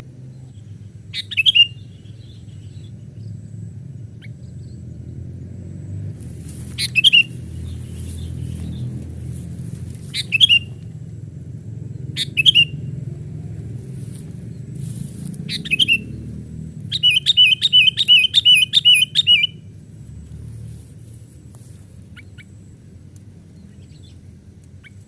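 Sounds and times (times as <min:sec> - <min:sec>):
bird chirping: 0:00.2 - 0:05.2, 0:06.4 - 0:11.0, 0:11.7 - 0:19.7, 0:21.6 - 0:25.0
low rumble: 0:01.7 - 0:18.1.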